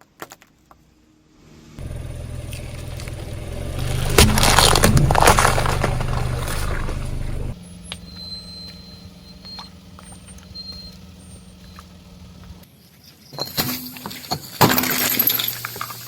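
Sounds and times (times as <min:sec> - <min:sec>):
tyre crushing objects: 0:01.8 - 0:07.6
car engine running: 0:01.8 - 0:12.6.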